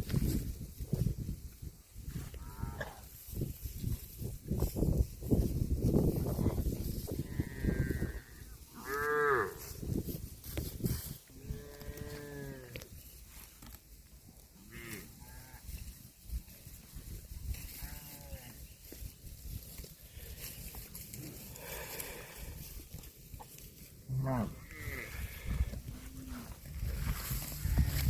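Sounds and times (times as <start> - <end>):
calves mooing: 11.4 - 12.8, 24.1 - 26.6.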